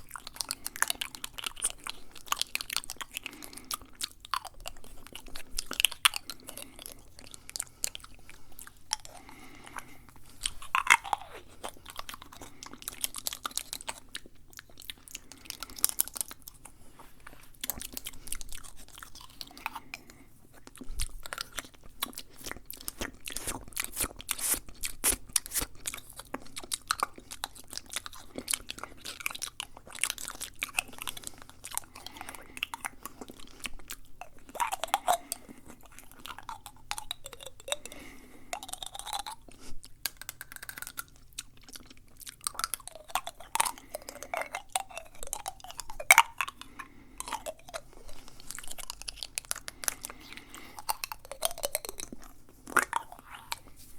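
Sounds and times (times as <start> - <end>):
wet mouth sounds: 0.0 - 53.9
slurps: 22.3 - 25.8.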